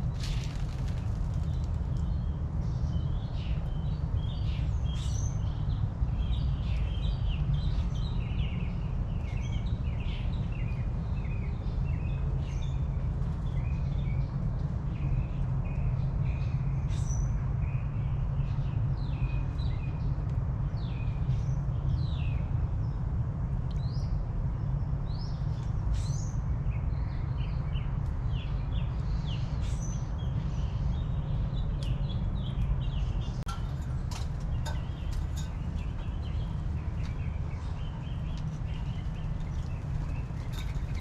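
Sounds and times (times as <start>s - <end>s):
small birds chirping: 0.0s - 23.0s, 24.8s - 41.0s
steady low rumble: 31.6s - 41.0s.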